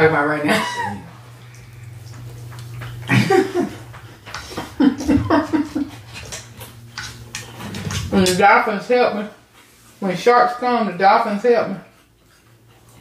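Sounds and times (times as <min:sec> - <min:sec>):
people laughing: 0:03.1 - 0:03.9, 0:04.5 - 0:06.0.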